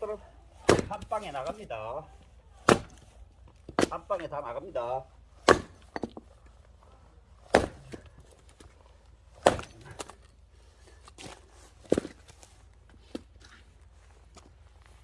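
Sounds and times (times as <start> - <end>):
axe chopping firewood: 0.5 - 1.8, 2.5 - 4.5, 5.3 - 6.4, 7.4 - 10.4, 11.0 - 13.6
wood knocking: 5.4 - 6.3.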